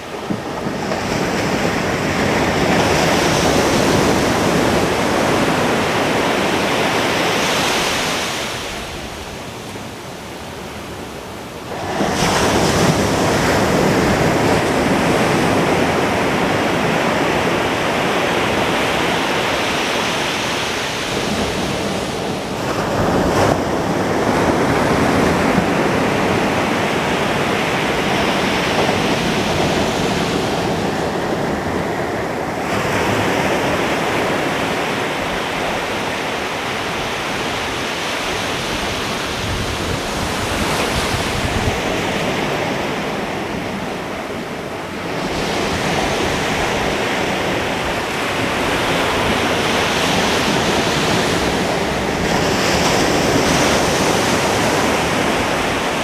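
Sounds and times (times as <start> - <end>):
ocean waves breaking on beach: 0.0 - 56.0
wind buffeting microphone: 0.0 - 56.0.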